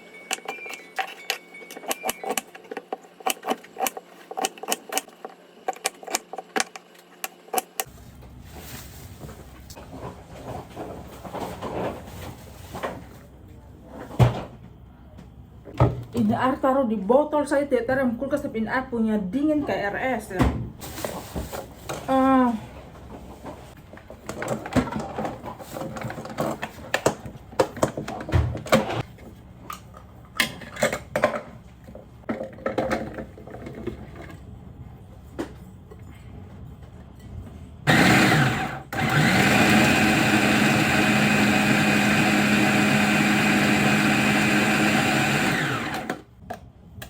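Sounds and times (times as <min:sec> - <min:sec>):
utensils and containers clattering: 0:00.2 - 0:05.0
electric food grinder motor: 0:37.9 - 0:46.2.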